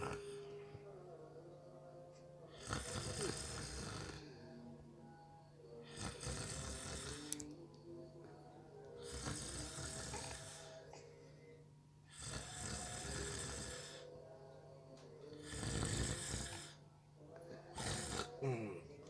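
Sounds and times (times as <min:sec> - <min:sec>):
person snoring: 0:02.6 - 0:04.4, 0:05.9 - 0:07.4, 0:09.0 - 0:10.8, 0:12.1 - 0:14.1, 0:15.4 - 0:16.8, 0:17.8 - 0:18.8.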